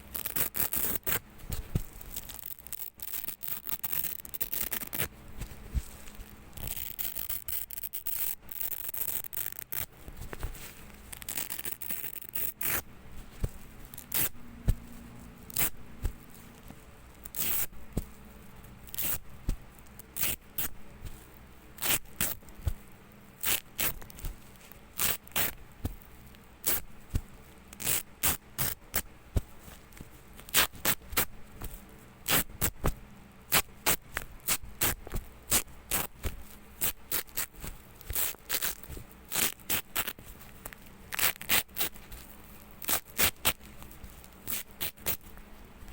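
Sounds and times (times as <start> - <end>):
velcro ripping: 0.1 - 1.2, 2.0 - 18.0, 18.9 - 19.3, 20.0 - 20.8, 21.8 - 22.7, 23.4 - 24.3, 25.0 - 25.6, 26.6 - 27.0, 27.8 - 29.0, 30.4 - 31.3, 32.2 - 45.4.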